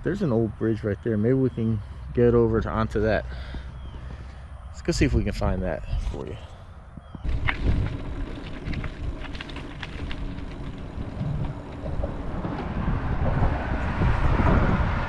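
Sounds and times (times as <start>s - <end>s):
wind buffeting microphone: 6.8s - 15.0s.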